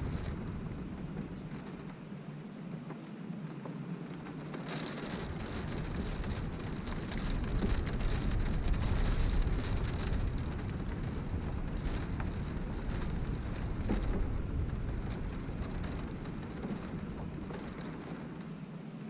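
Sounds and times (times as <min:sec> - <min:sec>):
low wind rumble: 0:00.0 - 0:19.0
rain beating on a window: 0:00.0 - 0:19.0.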